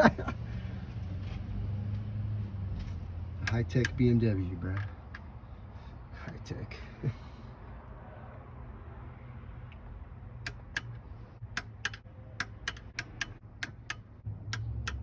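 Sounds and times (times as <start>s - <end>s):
sharp irregular clicks: 3.4s - 4.1s, 10.4s - 15.0s.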